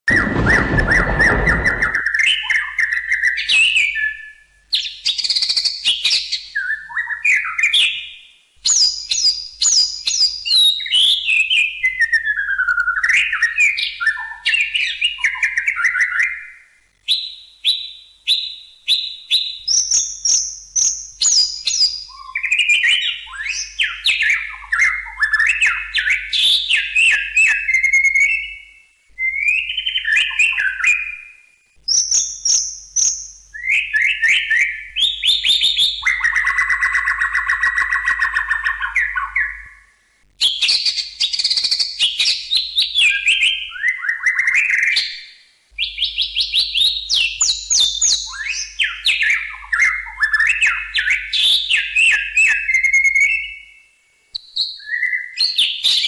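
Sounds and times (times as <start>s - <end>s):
bird singing whistled song: 0.1s - 56.0s.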